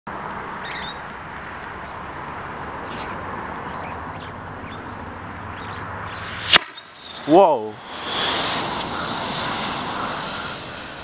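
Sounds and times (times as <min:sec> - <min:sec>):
faint bird chirps: 0:00.6 - 0:01.0.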